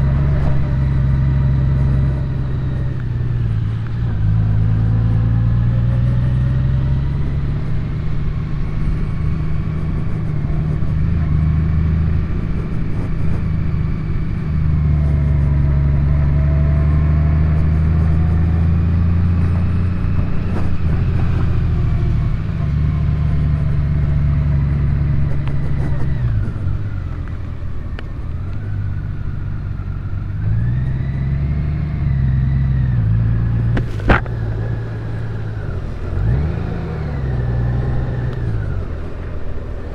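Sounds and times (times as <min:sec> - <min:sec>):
motorcycle engine rumbling: 0:00.0 - 0:39.9.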